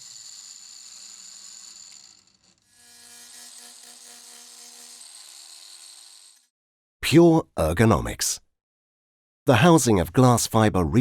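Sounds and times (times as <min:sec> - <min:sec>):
angle grinder grinding: 0:00.0 - 0:06.5.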